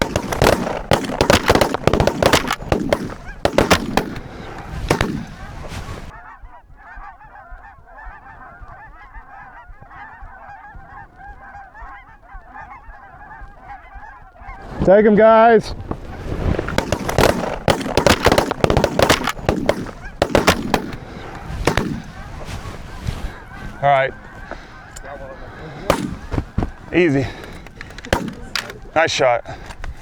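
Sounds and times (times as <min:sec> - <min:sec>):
shotgun shots: 0:00.0 - 0:06.1, 0:15.6 - 0:29.8
geese honking: 0:00.0 - 0:30.0.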